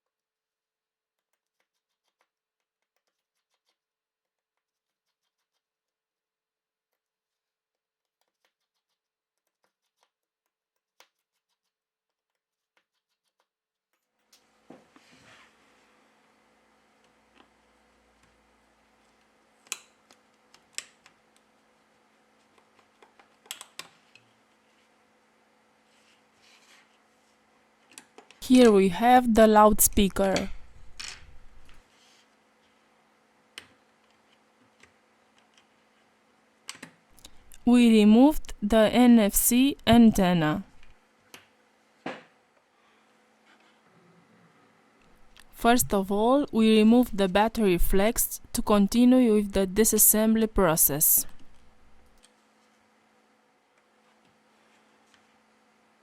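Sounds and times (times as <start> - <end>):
faint clicks of small parts: 19.0 - 21.5, 22.4 - 24.4, 33.6 - 35.8, 52.1 - 52.4.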